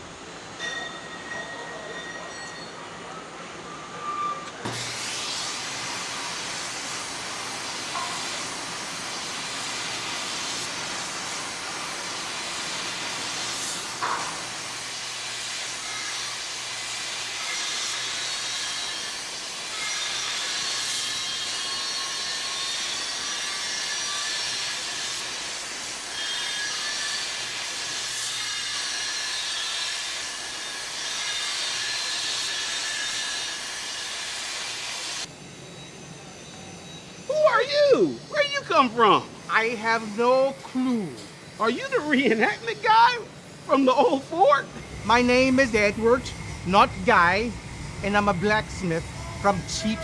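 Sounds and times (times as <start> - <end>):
welding arc hissing and crackling: 4.6 - 35.3, 36.5 - 50.0
low electrical hum: 35.3 - 50.0.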